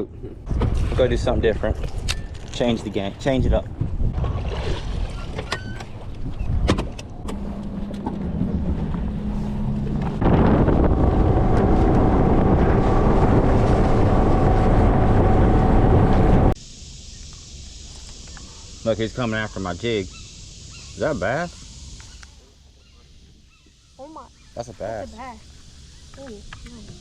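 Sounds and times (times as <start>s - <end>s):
outboard motor: 4.0s - 16.6s.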